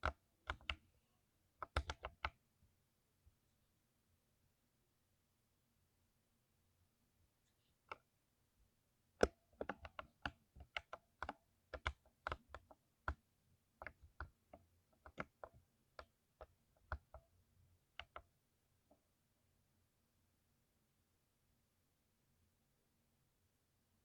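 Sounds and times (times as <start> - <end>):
typing on mechanical keyboard: 0.0 - 0.8, 1.6 - 2.4, 9.2 - 13.2, 13.8 - 17.2, 18.0 - 18.3.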